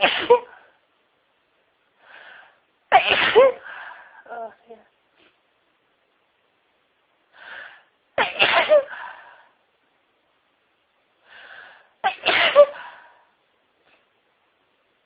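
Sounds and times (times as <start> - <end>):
person sneezing: 2.9 - 3.7, 8.2 - 9.0, 12.0 - 13.0.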